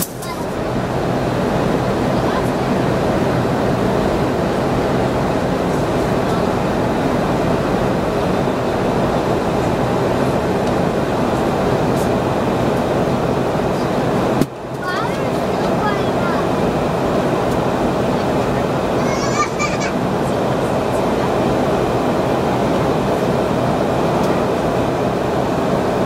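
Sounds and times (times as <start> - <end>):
rushing air: 0.0 - 14.7
jet engine roar in cabin: 0.0 - 26.0.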